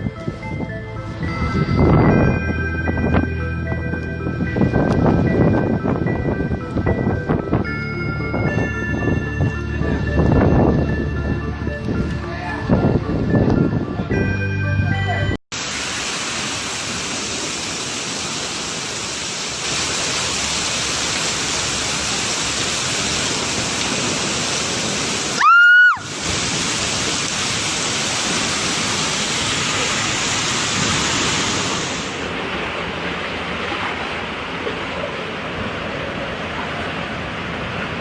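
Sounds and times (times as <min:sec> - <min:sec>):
strong wind: 0:00.0 - 0:15.0
loud rising beep: 0:00.0 - 0:15.4
pounding surf: 0:15.6 - 0:38.0.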